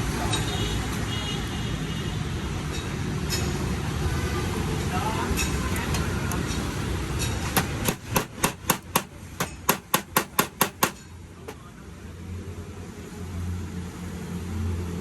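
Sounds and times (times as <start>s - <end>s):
sharp knocks: 7.6s - 11.0s.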